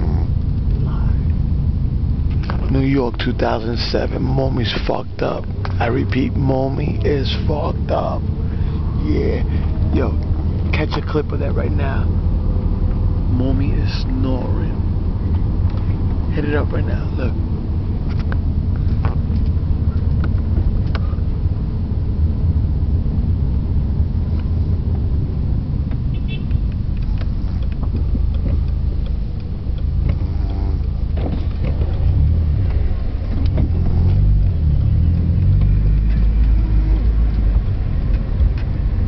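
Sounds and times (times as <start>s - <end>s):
car engine rumble and road noise: 0.0s - 39.0s
woman snoring: 30.2s - 30.8s.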